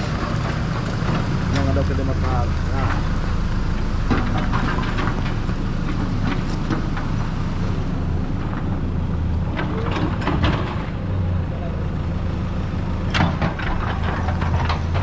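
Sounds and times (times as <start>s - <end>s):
vehicle engine running: 0.0s - 15.0s
knocks and rattles: 9.5s - 10.9s.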